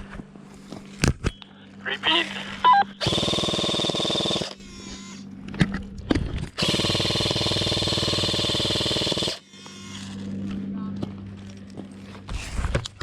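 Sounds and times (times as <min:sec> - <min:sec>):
airsoft gun firing full auto: 0:03.0 - 0:04.6, 0:06.6 - 0:09.4.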